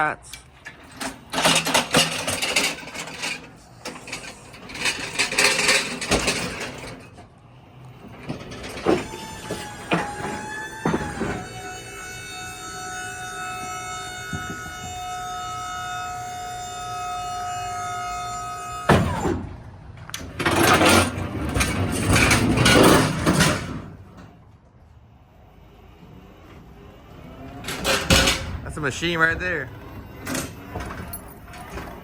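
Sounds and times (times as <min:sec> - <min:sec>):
loud metallic rattling: 0:00.7 - 0:07.1
electric motor whining: 0:09.0 - 0:19.5.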